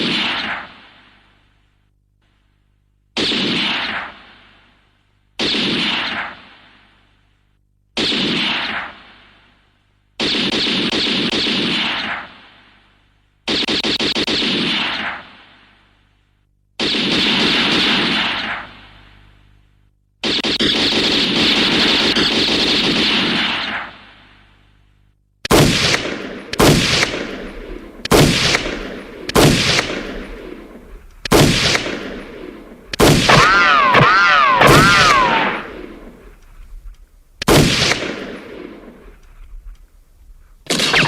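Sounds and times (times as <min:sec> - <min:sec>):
machine-gun fire: 0:03.2 - 0:04.4, 0:05.4 - 0:06.8, 0:08.0 - 0:09.4, 0:10.2 - 0:12.5, 0:13.5 - 0:15.6, 0:16.8 - 0:19.2, 0:20.2 - 0:24.3, 0:25.5 - 0:36.4, 0:37.4 - 0:39.4, 0:40.7 - 0:41.0
single gunshots echoing: 0:25.5 - 0:36.4, 0:37.4 - 0:39.2
wavering whine: 0:26.3 - 0:36.5.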